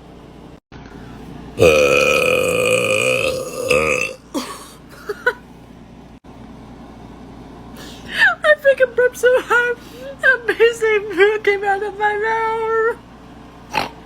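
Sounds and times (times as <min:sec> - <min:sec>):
woman burping: 0:01.6 - 0:04.8.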